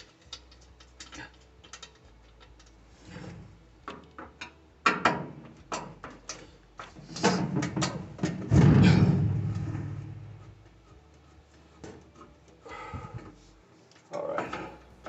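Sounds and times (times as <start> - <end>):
clicks and knocks of handling parts: 0.0 - 15.0
loud ringing thud: 8.5 - 10.4.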